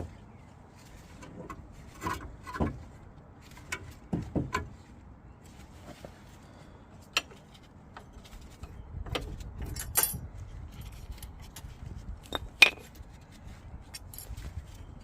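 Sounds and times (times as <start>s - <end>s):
brake pads clinking metal: 7.0s - 14.8s.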